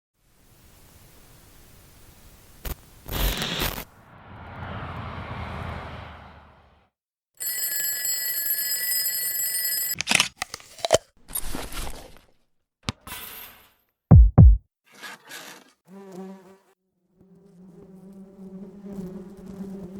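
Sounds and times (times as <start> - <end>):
noisy swoosh effect: 3.4 - 6.9
deep hits dropping in pitch: 14.1 - 14.6.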